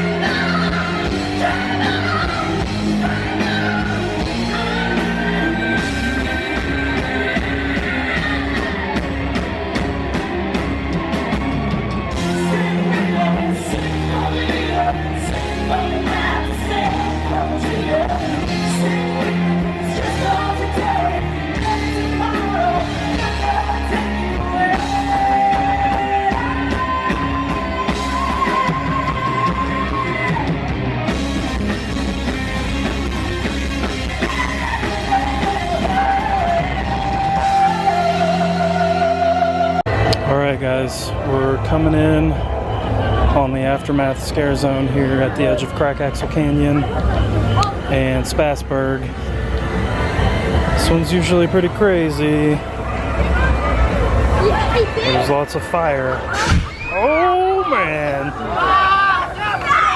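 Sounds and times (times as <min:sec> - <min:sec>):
pop-rock music with singer: 0:00.0 - 0:40.3.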